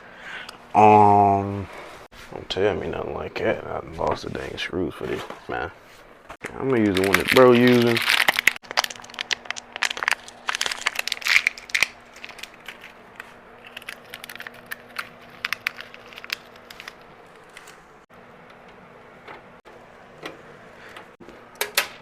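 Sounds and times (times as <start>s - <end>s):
plastic packaging crinkling: 6.6s - 17.8s.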